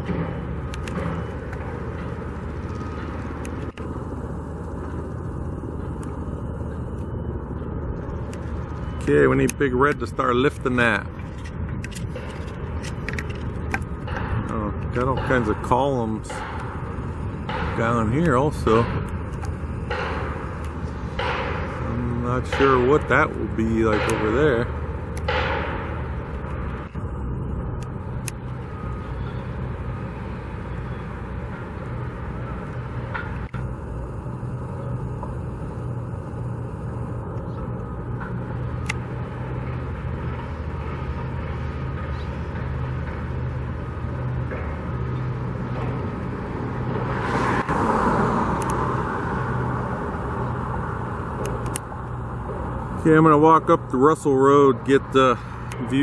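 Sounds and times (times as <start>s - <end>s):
vehicle engines rumbling: 0.0s - 56.0s
vehicle passing close by: 46.5s - 51.0s.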